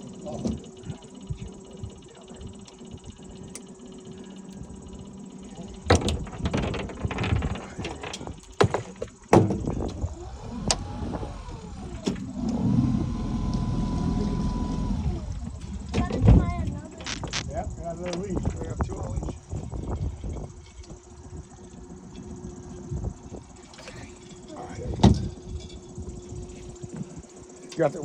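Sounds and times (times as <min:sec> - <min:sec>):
clunks and knocks in boat: 0:05.8 - 0:10.0, 0:24.9 - 0:25.5
boat motor revving: 0:09.3 - 0:17.5.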